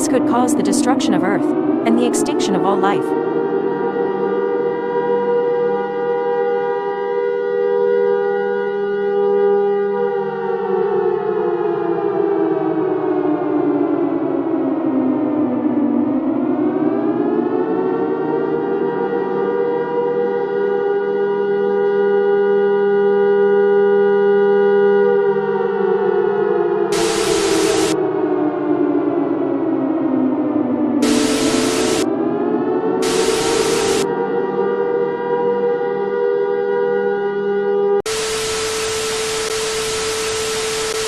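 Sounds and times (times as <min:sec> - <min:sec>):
civil defense siren: 0:00.0 - 0:41.0
electronic alarm drone: 0:26.9 - 0:28.1, 0:31.0 - 0:34.6, 0:38.1 - 0:41.0
loud static hiss: 0:27.0 - 0:28.0, 0:31.0 - 0:32.0, 0:33.0 - 0:34.0, 0:38.1 - 0:41.0
steady electronic tone: 0:27.0 - 0:28.0, 0:31.0 - 0:32.1, 0:33.0 - 0:34.1, 0:38.1 - 0:41.0.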